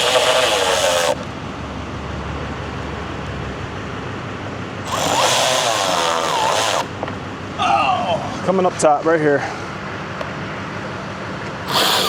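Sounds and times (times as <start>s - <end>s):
power driver whine: 0.0s - 1.7s, 4.8s - 7.2s, 11.6s - 12.0s.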